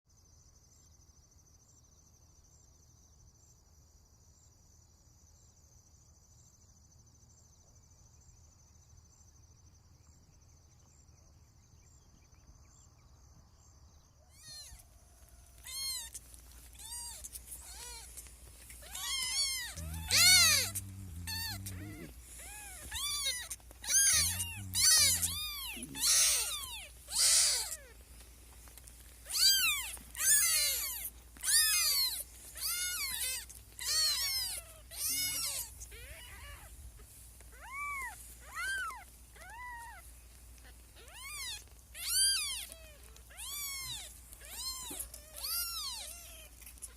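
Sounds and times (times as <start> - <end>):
kittens meowing: 14.3 - 14.8, 15.6 - 18.2, 18.8 - 28.0, 29.3 - 36.8, 37.5 - 46.9.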